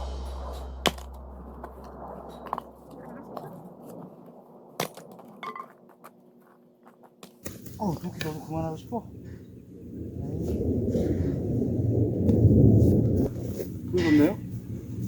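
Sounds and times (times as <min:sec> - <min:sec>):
drum-backed music: 0:00.0 - 0:01.7.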